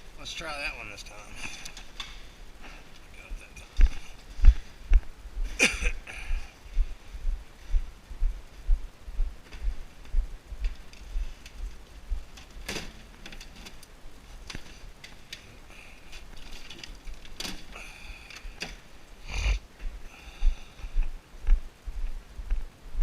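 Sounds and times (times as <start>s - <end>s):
objects knocking and clattering: 16.1s - 17.8s.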